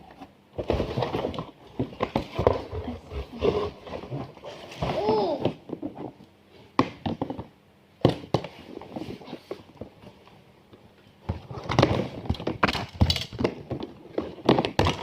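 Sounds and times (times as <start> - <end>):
plastic parts clattering: 11.4 - 15.0.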